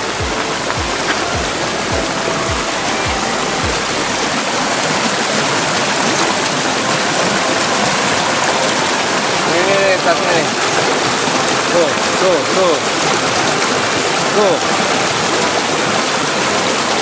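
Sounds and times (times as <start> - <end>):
background music with low beat: 0.0 - 6.0
flowing stream water: 0.0 - 17.0.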